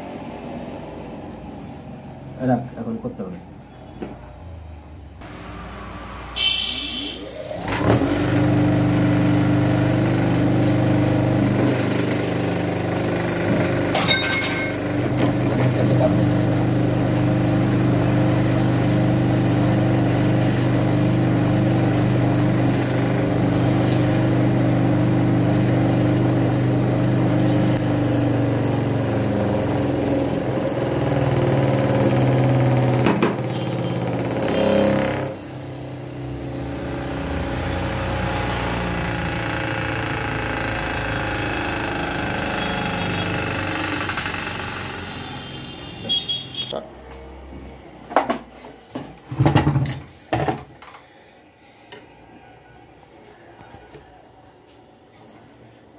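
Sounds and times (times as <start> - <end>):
sewing machine running: 7.2 - 14.0, 14.6 - 35.5, 36.4 - 45.6.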